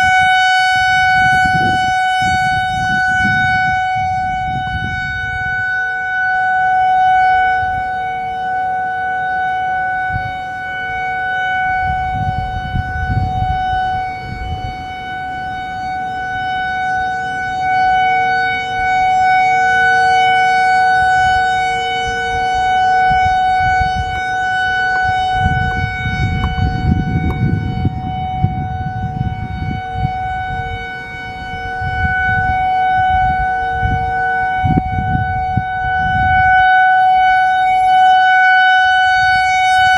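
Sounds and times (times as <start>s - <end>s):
warning siren steady tone: 0.0s - 39.9s
wind rumble on microphone: 0.0s - 39.9s.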